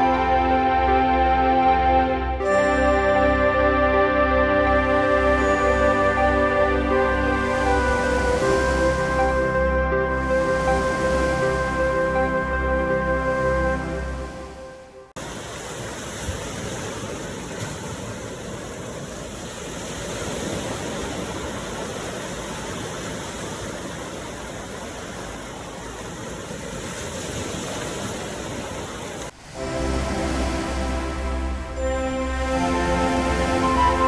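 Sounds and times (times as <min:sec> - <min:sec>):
music: 0:00.0 - 0:15.1, 0:29.4 - 0:34.0
ocean waves: 0:00.0 - 0:34.0.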